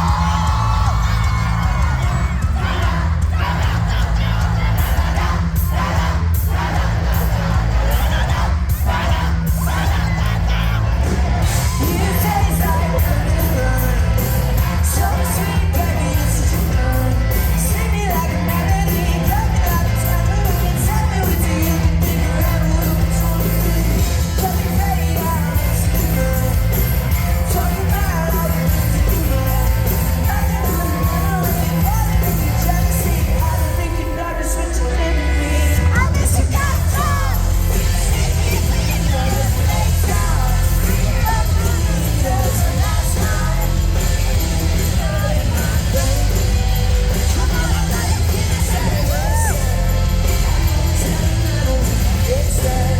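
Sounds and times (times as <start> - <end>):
live pop-rock band playing: 0.0 - 52.9
person singing: 11.4 - 52.9.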